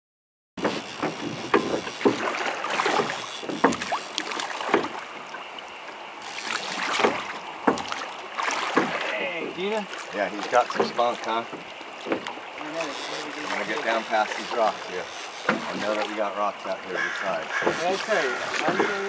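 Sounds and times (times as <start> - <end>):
sharp splashes and knocks: 0.6 - 19.0
river water rushing: 2.0 - 19.0.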